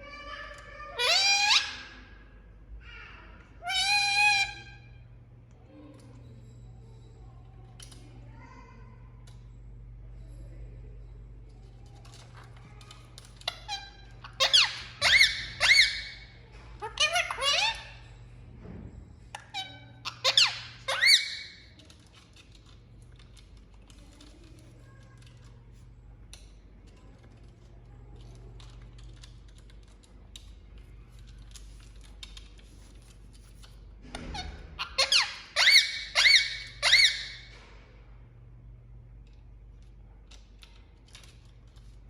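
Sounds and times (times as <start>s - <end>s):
parrot shrill calls: 0.8s - 2.0s, 3.6s - 4.8s, 13.6s - 18.0s, 19.5s - 21.7s, 34.3s - 37.5s.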